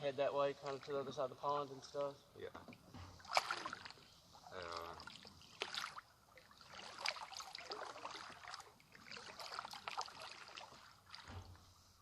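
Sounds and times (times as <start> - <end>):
paddles splashing in water: 2.7 - 11.6.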